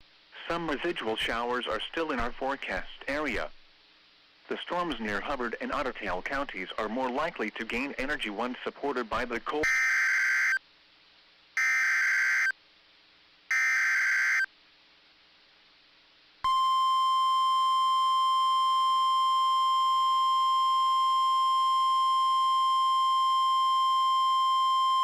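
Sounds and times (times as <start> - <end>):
steady warning alarm tone: 9.6 - 10.6, 11.6 - 12.5, 13.5 - 14.5.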